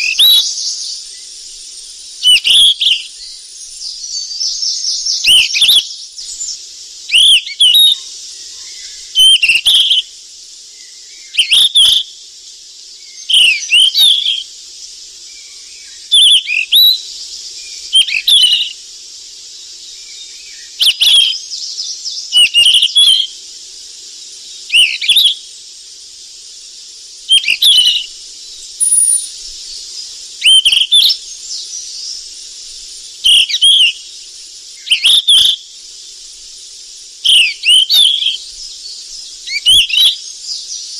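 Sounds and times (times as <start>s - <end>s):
bird whistling calls: 0.0s - 10.1s, 11.2s - 12.1s, 13.1s - 14.5s, 15.4s - 18.8s, 20.0s - 23.3s, 24.6s - 25.5s, 27.3s - 29.8s, 30.4s - 32.2s, 33.2s - 34.1s, 34.8s - 35.7s, 37.2s - 40.9s
steady high hiss: 0.0s - 40.9s.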